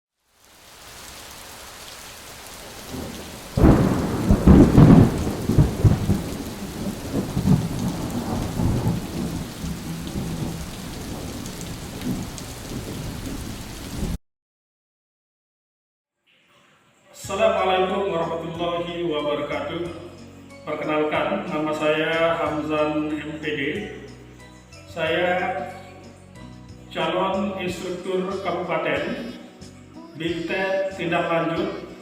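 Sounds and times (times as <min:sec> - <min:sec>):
rain hissing: 0:00.2 - 0:14.2
thunder clap rumbling: 0:02.6 - 0:14.2.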